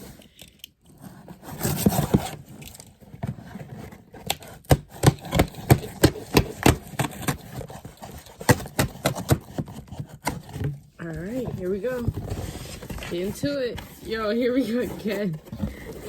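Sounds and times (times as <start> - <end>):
cardboard scraping and tearing: 0.9 - 16.0
knocks and taps on box: 4.7 - 7.5.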